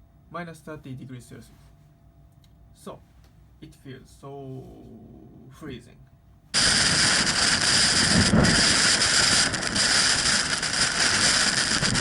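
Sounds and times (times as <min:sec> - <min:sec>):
blizzard wind buffeting microphone: 0:06.6 - 0:12.0.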